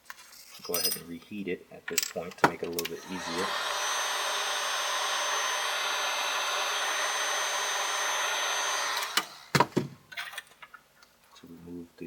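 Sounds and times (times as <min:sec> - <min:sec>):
hot-air blower running: 0:02.8 - 0:09.7.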